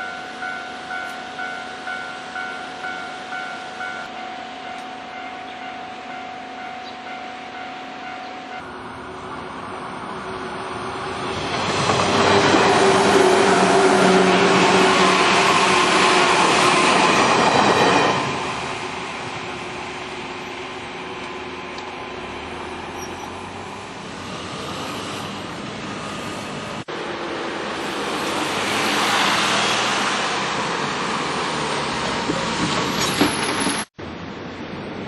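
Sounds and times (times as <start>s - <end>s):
electric train passing: 0.0s - 33.8s
steady whine of train motors: 8.6s - 29.2s.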